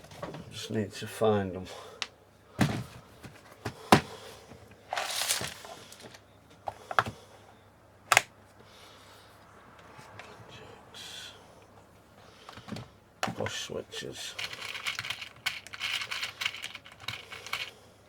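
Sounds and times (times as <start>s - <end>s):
rustling scrape: 4.9s - 6.0s
parts clacking and knocking: 14.3s - 17.8s.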